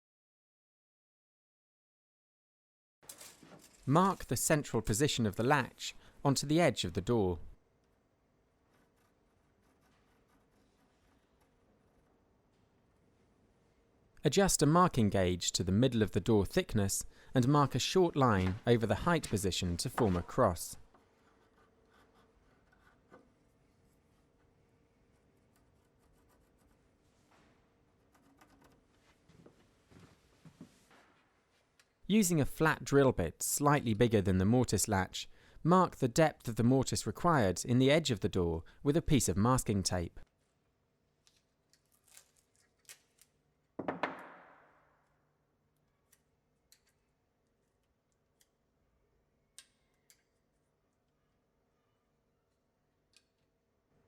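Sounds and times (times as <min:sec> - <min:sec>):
pencil scratching on wood: 0:08.5 - 0:12.1, 0:21.0 - 0:27.0, 0:27.9 - 0:28.9
tape clicks and rustles: 0:41.2 - 0:43.4.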